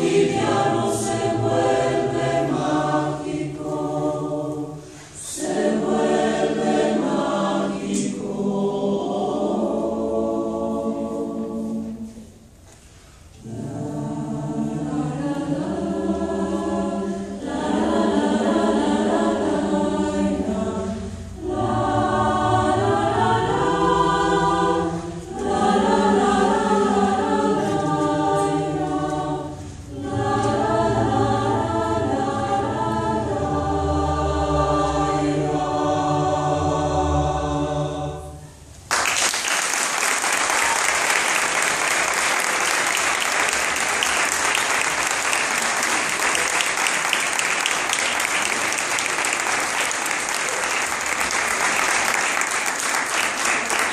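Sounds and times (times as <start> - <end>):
choir singing: 0.0 - 12.6, 13.3 - 38.8, 40.4 - 53.9
audience applause: 38.9 - 53.9.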